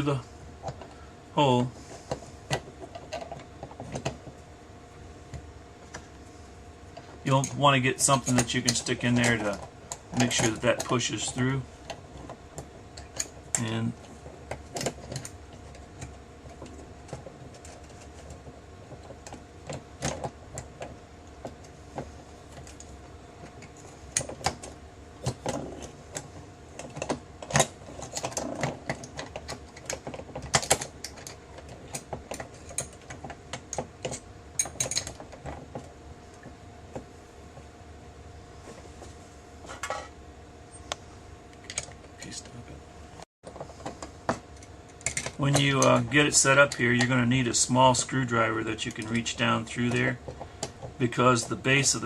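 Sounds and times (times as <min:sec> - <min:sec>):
faint steady hum: 0:00.0 - 0:52.0.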